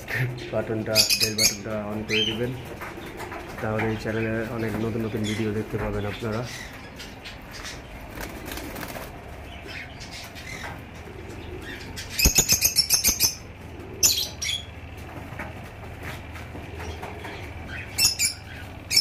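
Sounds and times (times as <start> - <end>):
parrots chirping: 0.8 - 15.0, 16.1 - 19.0
wings flapping: 6.7 - 19.0.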